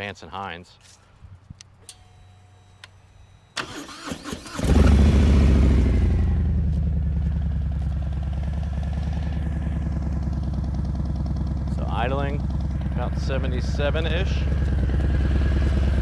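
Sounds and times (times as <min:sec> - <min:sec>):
starter motor cranking: 0:01.8 - 0:05.4
motorcycle engine idling: 0:04.6 - 0:16.0.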